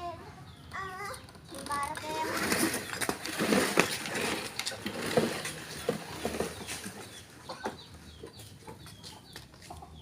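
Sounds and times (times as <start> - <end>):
chickens clucking: 5.4 - 10.0.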